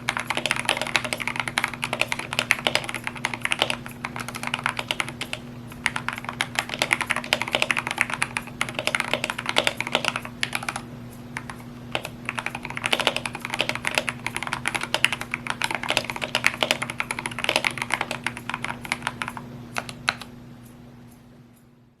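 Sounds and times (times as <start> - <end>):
fast typing on mechanical keyboard: 0.0 - 20.3.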